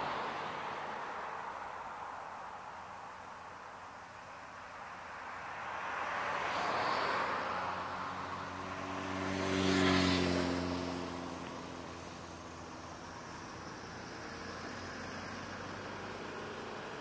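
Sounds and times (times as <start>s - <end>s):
vehicle engine hum passing: 0.0s - 17.0s
vehicle rushing past: 5.2s - 17.0s.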